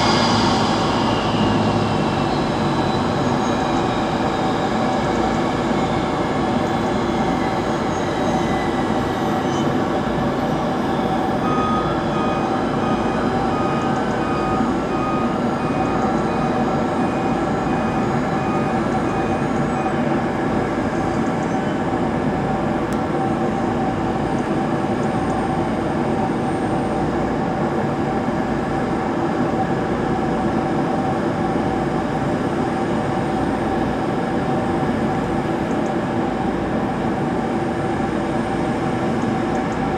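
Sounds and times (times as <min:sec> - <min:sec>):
faint high tones sliding downward: 0:00.0 - 0:04.4
jet engines humming and whining: 0:00.0 - 0:39.9.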